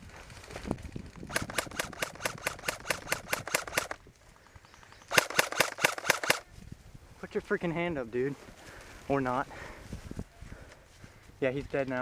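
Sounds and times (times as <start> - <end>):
airsoft rifle firing single shots: 1.3 - 4.0, 5.1 - 6.4.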